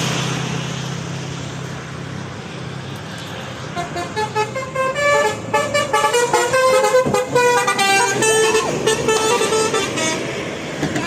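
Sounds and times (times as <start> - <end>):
multi-tone bus horn melody: 3.7 - 11.0.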